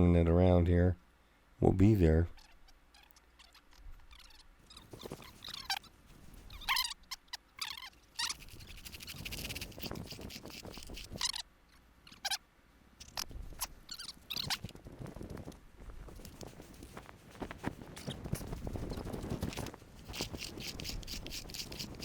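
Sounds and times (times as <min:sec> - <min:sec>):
handling noise: 0:14.3 - 0:22.0.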